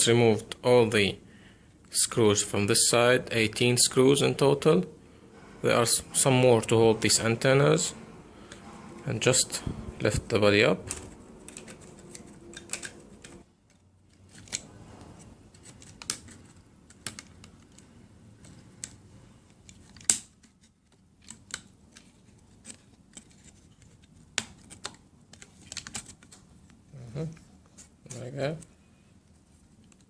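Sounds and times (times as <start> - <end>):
plastic parts clicking and tapping: 10.9 - 14.6, 15.5 - 26.8.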